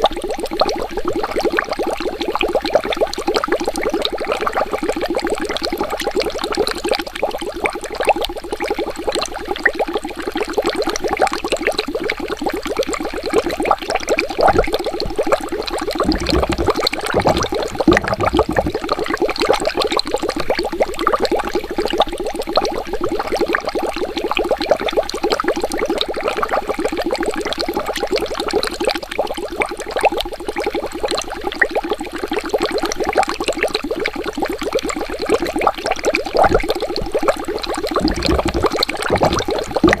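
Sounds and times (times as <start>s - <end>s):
water bubbling: 14.4s - 19.5s, 36.4s - 40.0s
deep low rumble: 16.0s - 18.9s, 38.0s - 40.0s.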